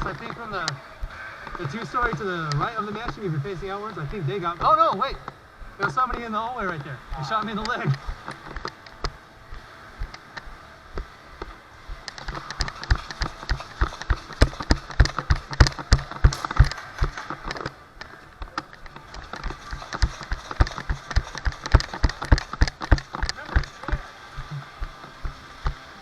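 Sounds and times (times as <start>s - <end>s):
jogging footsteps: 0.0s - 26.0s
gear rattling: 12.0s - 25.8s.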